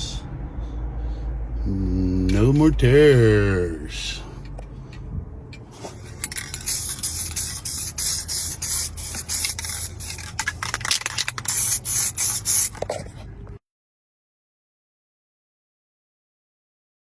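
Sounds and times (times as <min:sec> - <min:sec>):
aerosol can spraying: 0:06.3 - 0:12.8.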